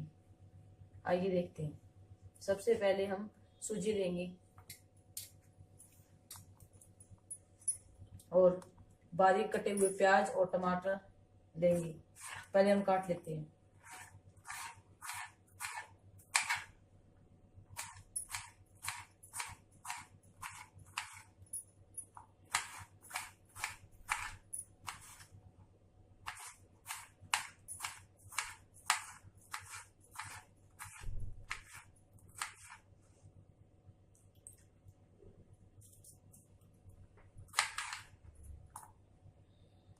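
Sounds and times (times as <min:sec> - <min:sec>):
knife chopping on cutting board: 0:22.5 - 0:25.2, 0:26.3 - 0:32.8.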